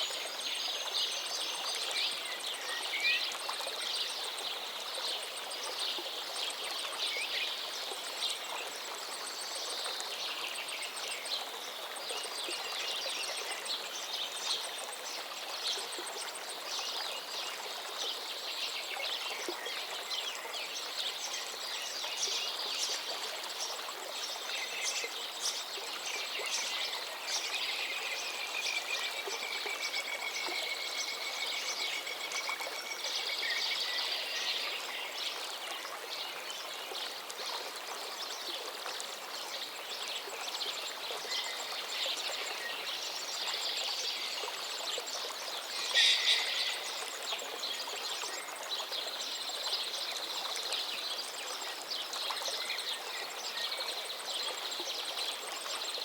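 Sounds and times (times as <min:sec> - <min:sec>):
river flowing: 0:00.0 - 0:56.0
birds chirping and singing: 0:45.8 - 0:47.0.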